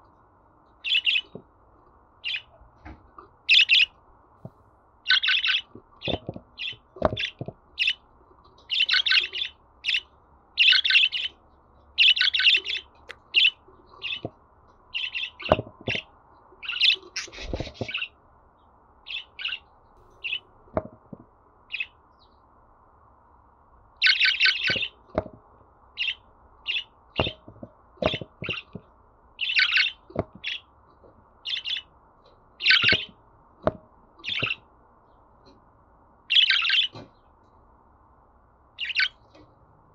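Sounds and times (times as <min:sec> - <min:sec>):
budgerigar chirping and warbling: 0:00.8 - 0:01.4, 0:02.2 - 0:02.5, 0:03.5 - 0:03.9, 0:05.1 - 0:08.0, 0:08.7 - 0:11.4, 0:12.0 - 0:14.3, 0:14.9 - 0:18.2, 0:19.1 - 0:19.6, 0:24.0 - 0:25.0, 0:26.0 - 0:27.4, 0:28.0 - 0:28.7, 0:29.4 - 0:30.7, 0:31.4 - 0:31.9, 0:32.6 - 0:33.2, 0:34.2 - 0:34.7, 0:36.3 - 0:37.0, 0:38.8 - 0:39.2.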